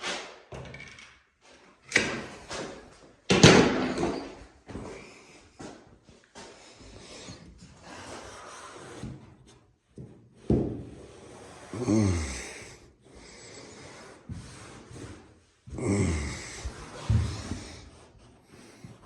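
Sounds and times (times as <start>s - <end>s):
rubbing and handling noises: 5.6s - 15.8s, 16.4s - 19.0s
person exhaling through nose: 11.7s - 12.8s, 15.8s - 17.9s
person sighing: 11.7s - 12.8s, 15.7s - 17.0s.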